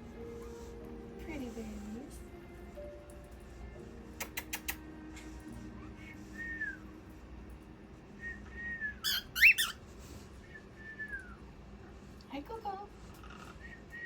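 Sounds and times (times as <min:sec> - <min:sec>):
quick clicks: 0:04.2 - 0:04.8
parrot whistling: 0:08.2 - 0:09.8
parrot sharp rising call: 0:09.0 - 0:09.8.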